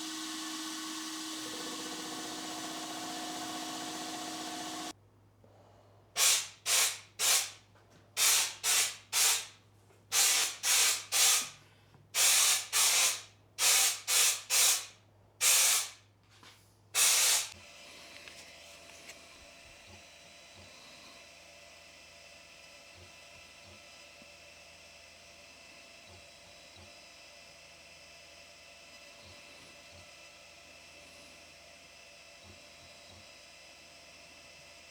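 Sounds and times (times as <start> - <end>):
short hissing spray bursts: 6.2 - 7.6, 8.2 - 11.6, 12.2 - 16.0, 17.0 - 17.6.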